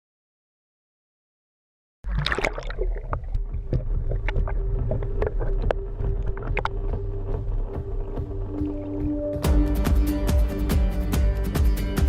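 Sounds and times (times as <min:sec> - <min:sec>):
water splashes: 0:02.0 - 0:09.1
boat engine rumble: 0:02.5 - 0:09.5.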